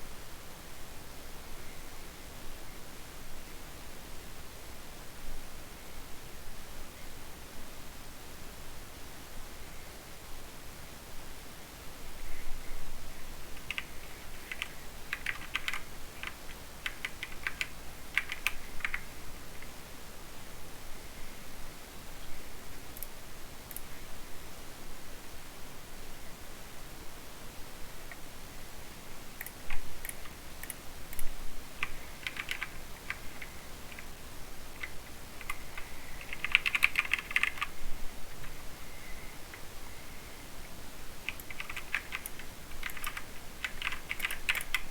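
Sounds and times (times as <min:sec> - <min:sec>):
mechanical keyboard typing: 0:13.6 - 0:19.1, 0:31.8 - 0:34.1, 0:34.8 - 0:37.8, 0:41.3 - 0:44.9.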